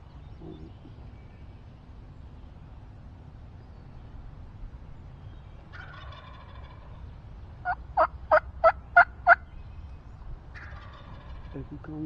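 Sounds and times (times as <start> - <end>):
wild turkey gobble: 5.7 - 7.0, 7.6 - 9.4, 10.5 - 11.6
wild turkey yelps: 10.6 - 11.5.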